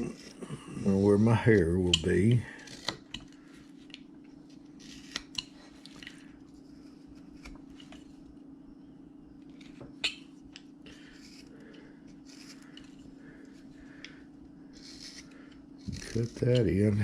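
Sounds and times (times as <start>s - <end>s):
knife carving wood: 0.0s - 4.0s, 4.6s - 8.1s, 10.9s - 13.0s, 14.0s - 17.0s
steady low hum: 0.0s - 17.0s.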